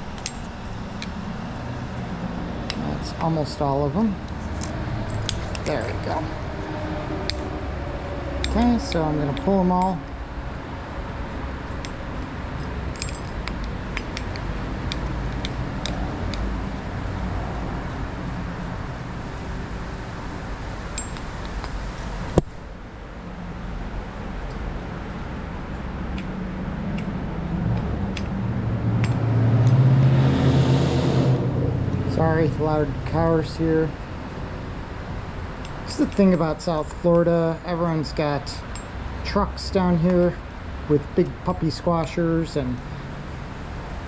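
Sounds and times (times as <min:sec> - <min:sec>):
loud vehicle engine: 0:00.0 - 0:22.4, 0:23.2 - 0:36.6
road traffic rumbling: 0:00.0 - 0:44.0
small metallic clinks of bolts: 0:12.6 - 0:16.4, 0:21.0 - 0:21.7, 0:38.6 - 0:39.0.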